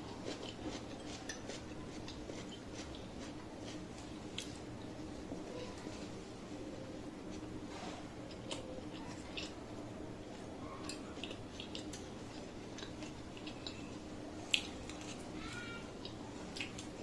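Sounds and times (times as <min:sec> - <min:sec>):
person chewing food: 0:00.0 - 0:05.0, 0:08.2 - 0:17.0.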